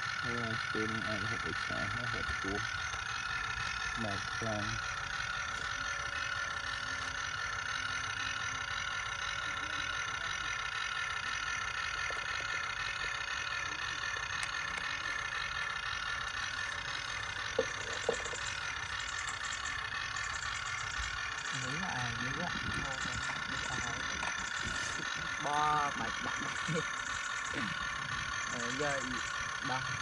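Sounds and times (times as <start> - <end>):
model truck motor whine: 0.0 - 30.0.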